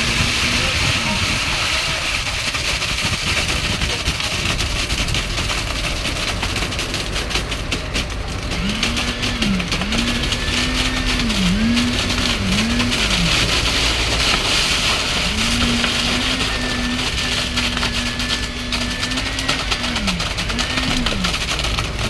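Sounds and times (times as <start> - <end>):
diesel engine running under load: 0.0 - 22.0.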